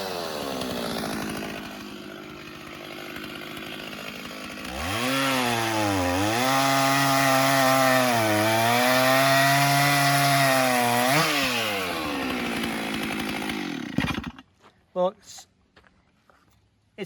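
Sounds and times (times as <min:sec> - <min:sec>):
chainsaw cutting log: 0:00.0 - 0:14.6.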